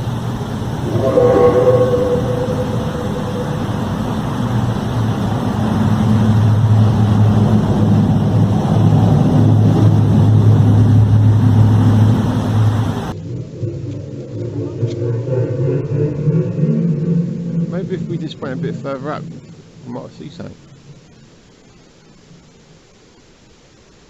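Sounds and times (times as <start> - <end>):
horn-like tone: 0.8 - 4.7.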